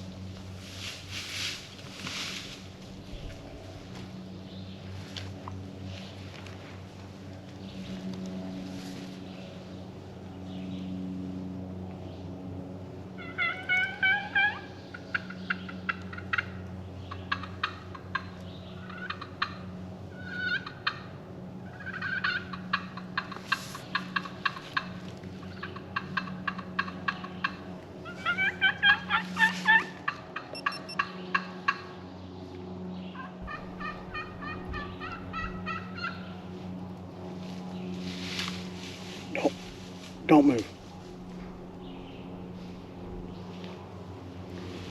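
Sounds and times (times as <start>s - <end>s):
turkey yelping and clucking: 13.2s - 21.1s, 21.7s - 31.8s, 33.2s - 36.4s.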